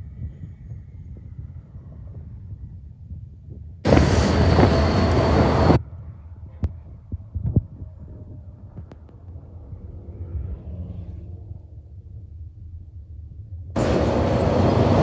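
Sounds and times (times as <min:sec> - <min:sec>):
loud hiss: 0:03.9 - 0:05.8
freight train rumbling: 0:03.9 - 0:05.9, 0:13.7 - 0:15.0.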